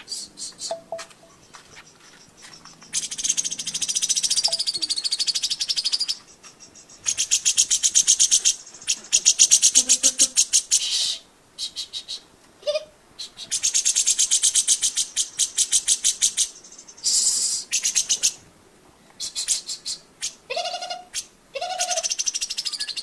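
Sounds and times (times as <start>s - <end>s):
bird singing high trills: 0.2s - 9.6s, 21.8s - 23.0s.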